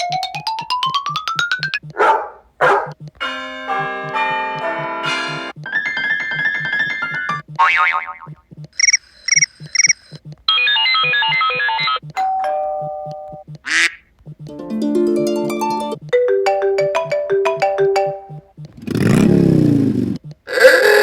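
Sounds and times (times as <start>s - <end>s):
phone ringtones through speaker: 8.2s - 13.6s.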